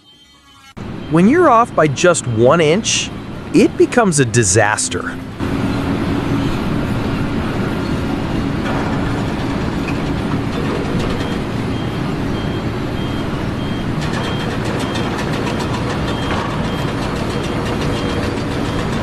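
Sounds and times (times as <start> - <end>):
reversing alarm beeping: 0.0 - 3.8, 9.8 - 19.0
heavy machine engine running: 0.8 - 19.0.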